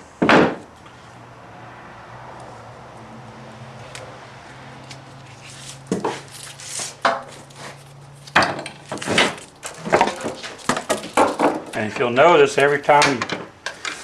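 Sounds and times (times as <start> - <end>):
wire scraping and rustling: 3.8 - 12.0.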